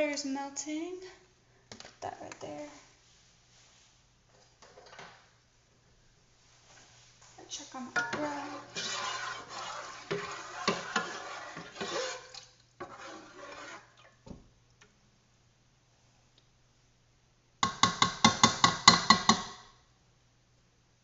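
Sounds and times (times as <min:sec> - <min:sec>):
rustling and handling noise: 0:01.7 - 0:05.3, 0:05.9 - 0:10.0
utensil rapidly striking a pan: 0:17.6 - 0:19.6.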